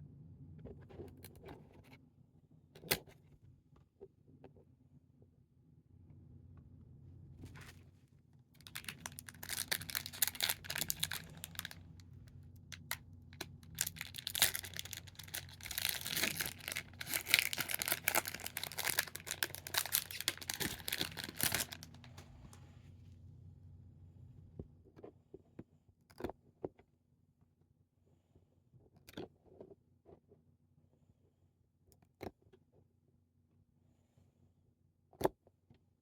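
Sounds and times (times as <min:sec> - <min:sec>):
wrapper tearing and crinkling: 0:08.6 - 0:12.0, 0:12.7 - 0:22.1.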